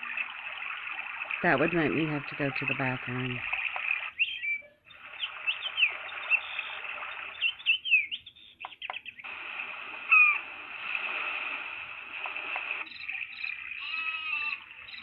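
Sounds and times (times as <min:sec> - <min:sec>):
recorded birdsong through small speaker: 0:00.0 - 0:15.0
clicks: 0:08.6 - 0:13.3
hissy background: 0:09.2 - 0:15.0.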